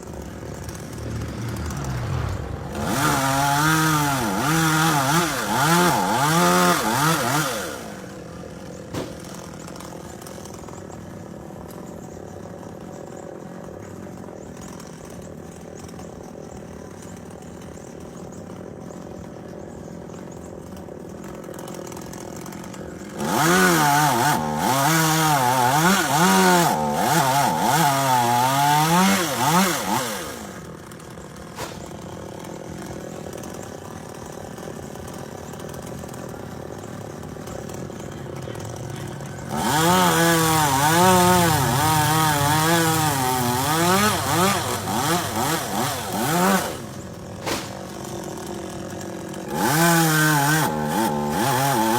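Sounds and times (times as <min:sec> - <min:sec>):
chainsaw revving and idling: 0:00.0 - 0:51.9.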